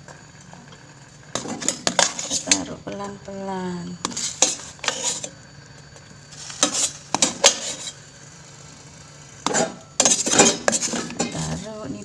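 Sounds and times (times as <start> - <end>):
utensil and dishes clinking: 9.4 - 11.6.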